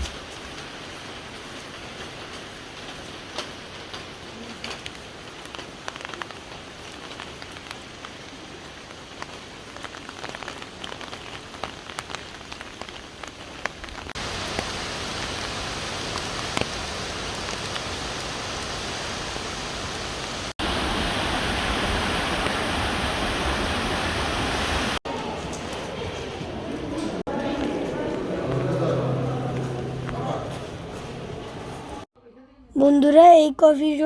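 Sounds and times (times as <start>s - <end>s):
waterfall rushing: 14.2s - 25.0s.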